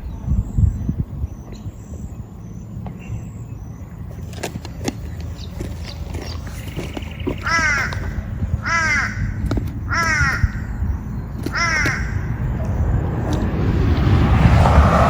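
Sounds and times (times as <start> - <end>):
steady low rumble: 0.0 - 4.3, 7.1 - 15.0
crow cawing: 7.4 - 10.8, 11.5 - 12.3.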